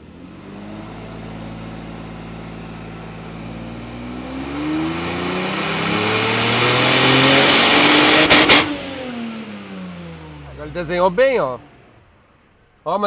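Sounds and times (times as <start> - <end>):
car engine revving at full throttle: 0.0 - 10.9
sharp exhaust cracks: 5.5 - 9.2.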